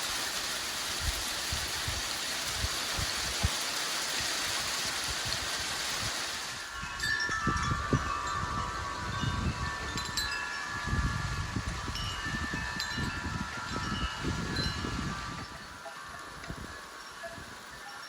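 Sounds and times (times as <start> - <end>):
wind buffeting microphone: 1.0 - 3.6, 4.6 - 17.7
wind chimes ringing: 6.7 - 18.0.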